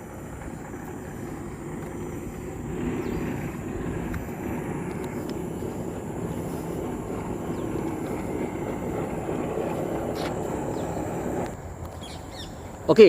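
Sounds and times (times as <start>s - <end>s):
low rumble of distant engine: 0.0s - 13.0s
faint bird chirps: 12.0s - 12.7s.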